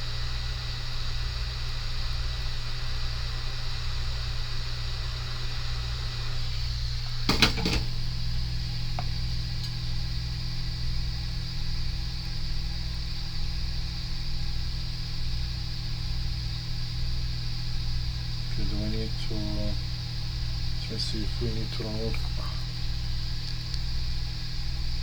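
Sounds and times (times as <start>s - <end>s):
electric blower humming: 4.0s - 13.4s, 17.8s - 24.9s.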